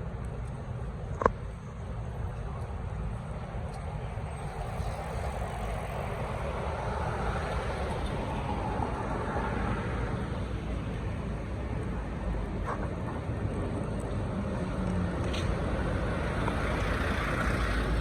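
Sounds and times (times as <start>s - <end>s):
street traffic rumbling: 0.0s - 18.0s
vehicle passing: 16.3s - 18.0s.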